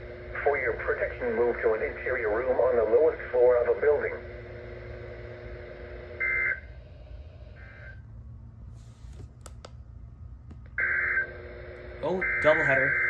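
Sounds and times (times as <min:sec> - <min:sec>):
radio static: 0:00.0 - 0:06.7, 0:11.2 - 0:13.0.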